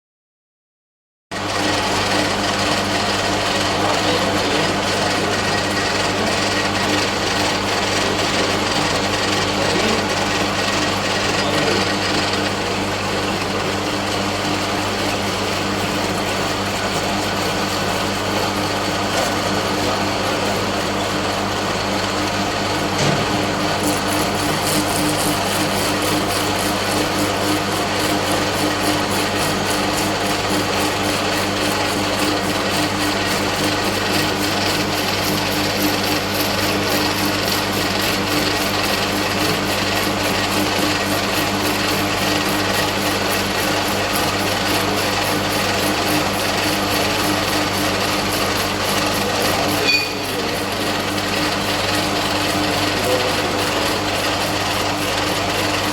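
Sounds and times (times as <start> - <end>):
lathe gears whirring: 1.4 - 55.9
single short knock: 23.0 - 23.5.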